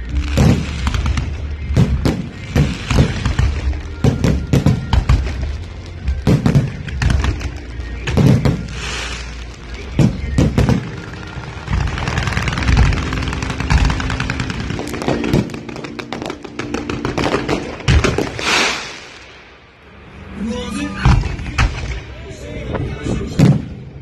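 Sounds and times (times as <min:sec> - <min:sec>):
music: 0:00.0 - 0:18.4
fireworks booming: 0:00.0 - 0:19.9, 0:23.3 - 0:24.0
fireworks crackling: 0:00.0 - 0:22.4.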